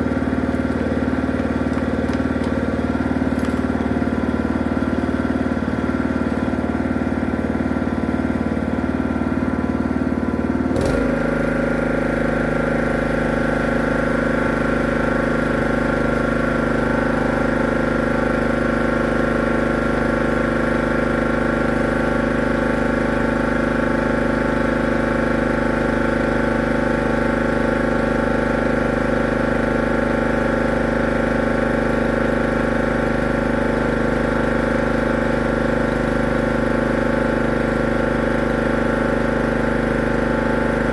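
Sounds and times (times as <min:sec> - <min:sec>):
machine motor humming: 0:00.0 - 0:23.7.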